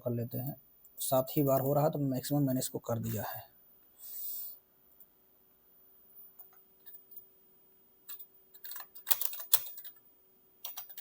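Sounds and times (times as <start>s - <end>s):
typing on computer keyboard: 8.1s - 10.0s, 10.6s - 11.0s.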